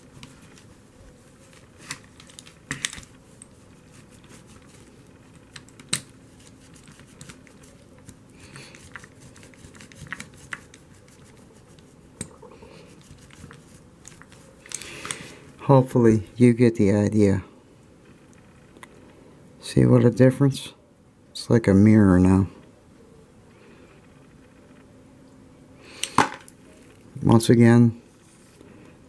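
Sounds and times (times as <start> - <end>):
cloth rubbing: 3.3 - 5.0.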